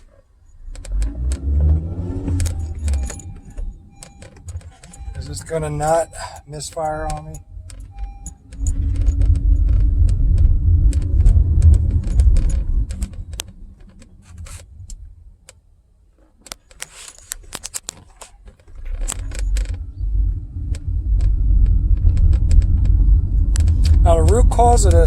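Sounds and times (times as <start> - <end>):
car engine and road rumble: 0.0 - 25.0
light rattling clicks: 2.2 - 15.6.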